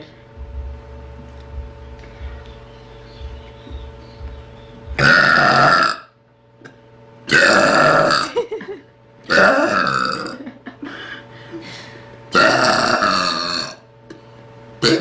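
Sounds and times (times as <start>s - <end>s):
girl burping: 5.0s - 6.1s, 7.3s - 8.4s, 9.3s - 10.4s, 12.4s - 13.8s.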